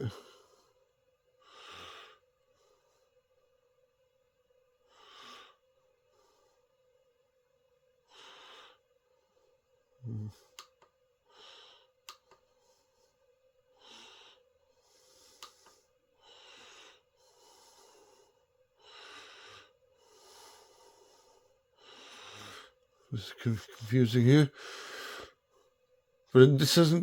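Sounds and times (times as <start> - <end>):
person breathing faintly: 8.1 - 10.6, 11.2 - 25.8.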